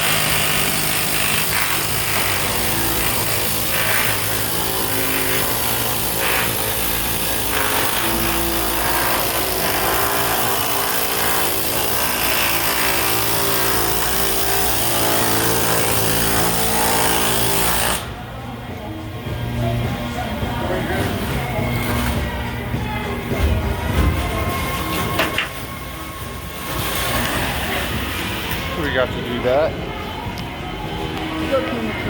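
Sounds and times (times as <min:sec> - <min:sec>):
pneumatic air hammer on sheet metal: 0:00.0 - 0:18.1, 0:24.8 - 0:25.8.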